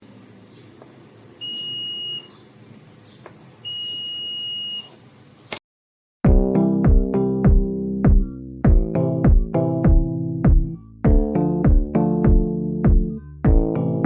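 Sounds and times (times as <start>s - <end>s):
alarm buzzer beeping: 1.4s - 2.3s, 3.6s - 4.9s
loud music with a beat: 6.3s - 14.0s.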